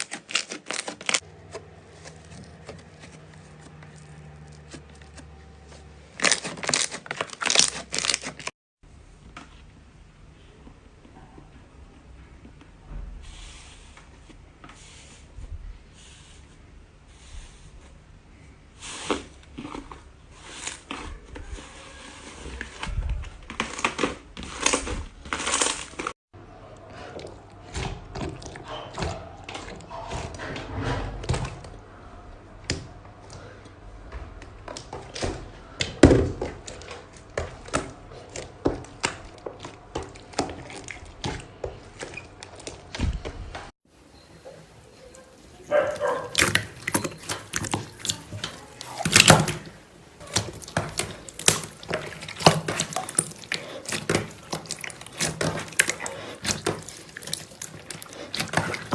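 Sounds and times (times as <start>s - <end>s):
slime squished by hand: 45.7s - 58.9s.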